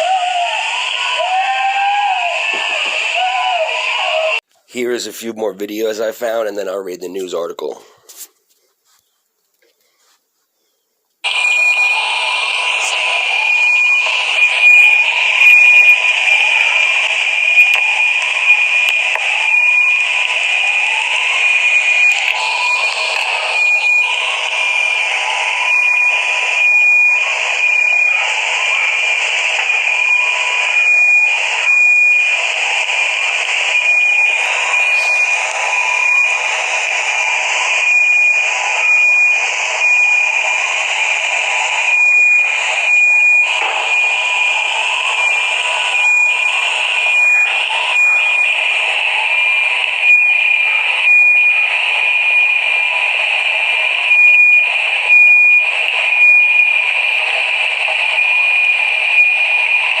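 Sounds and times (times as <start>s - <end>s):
lower alarm tone: 11.2s - 16.8s, 17.4s - 52.7s
high-pitched alarm tone: 11.2s - 52.9s, 53.9s - 60.0s.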